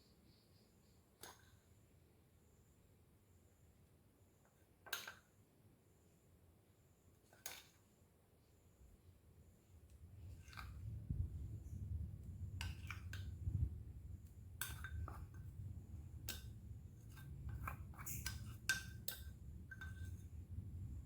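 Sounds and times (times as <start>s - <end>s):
utensil clinking on dishes: 17.1s - 20.3s.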